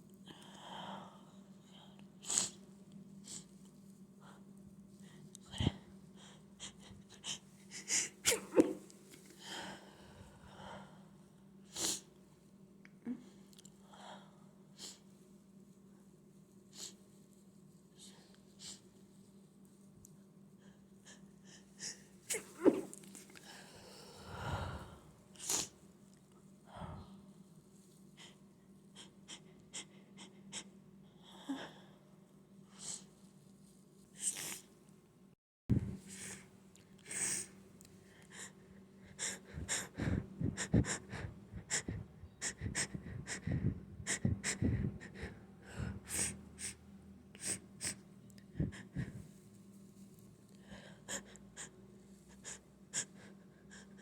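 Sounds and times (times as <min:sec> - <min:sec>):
person sneezing: 0:08.0 - 0:08.9, 0:22.3 - 0:23.0.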